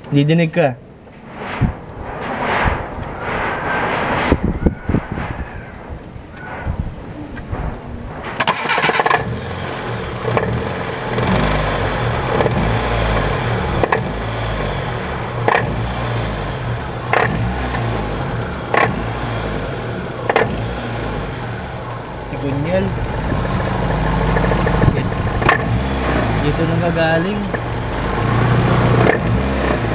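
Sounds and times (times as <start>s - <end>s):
engine knocking: 8.4s - 16.0s, 17.0s - 19.2s, 20.2s - 21.2s, 22.0s - 29.9s
car engine starting and idling: 8.4s - 29.9s.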